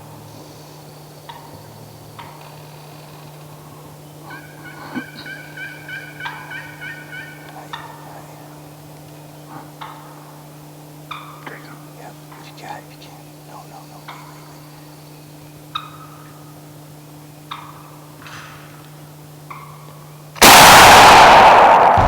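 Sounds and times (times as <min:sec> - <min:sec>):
turkey gobbling: 0:03.7 - 0:08.9, 0:17.4 - 0:18.1.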